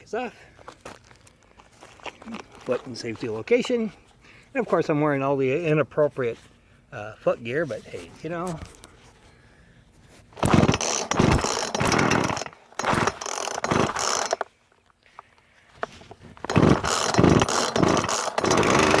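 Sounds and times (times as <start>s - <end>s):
chainsaw pull-started and running: 10.4s - 14.5s, 15.8s - 19.0s.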